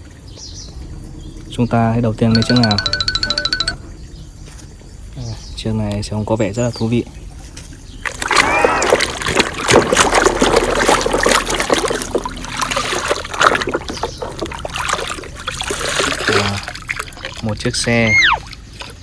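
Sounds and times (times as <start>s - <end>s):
water splashing on plastic toy: 8.0s - 19.0s.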